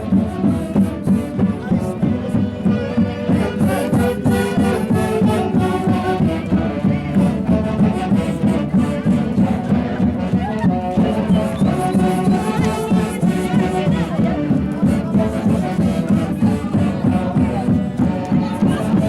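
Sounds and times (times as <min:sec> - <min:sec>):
lively festive band music: 0:00.0 - 0:19.0
wind instruments melody: 0:00.0 - 0:19.0.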